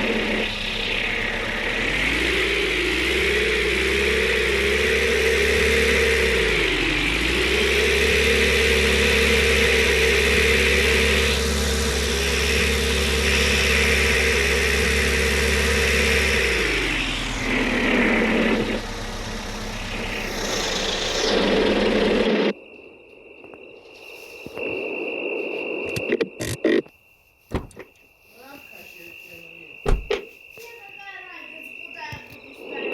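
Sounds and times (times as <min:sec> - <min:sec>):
pickup truck engine running: 0:00.0 - 0:22.5.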